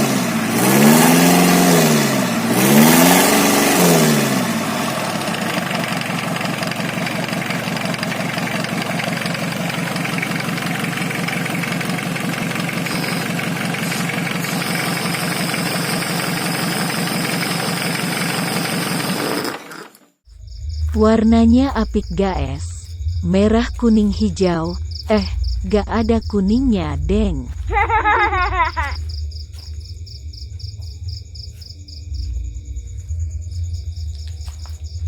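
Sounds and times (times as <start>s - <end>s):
truck engine revving: 0.0s - 19.6s, 20.8s - 29.6s
truck engine idling with clatter: 4.6s - 19.8s.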